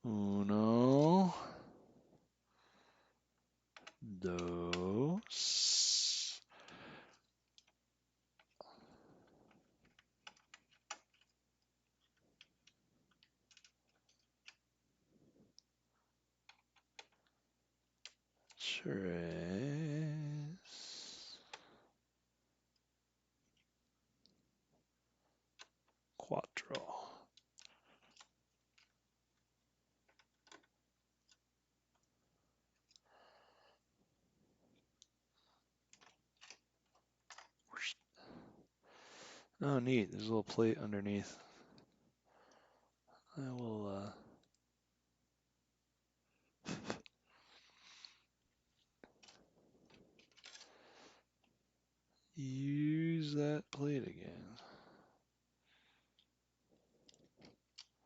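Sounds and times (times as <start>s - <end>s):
small metal parts clicking: 7.2s - 8.6s, 9.3s - 14.7s, 16.4s - 18.6s, 26.7s - 29.0s, 30.0s - 33.0s, 34.7s - 37.7s, 49.0s - 50.8s, 57.0s - 58.0s.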